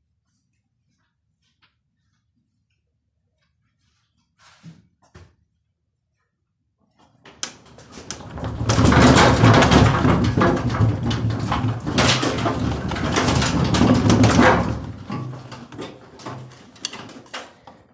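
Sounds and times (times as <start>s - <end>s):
washing machine drum rattling: 7.2s - 17.9s.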